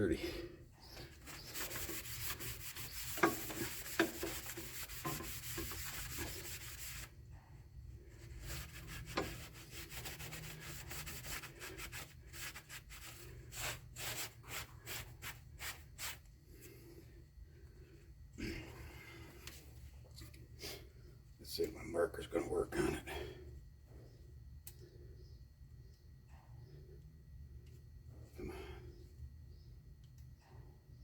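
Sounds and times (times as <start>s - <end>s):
scrubbing metal surface: 0.9s - 7.2s, 8.0s - 16.2s
low steady hum: 16.2s - 31.0s.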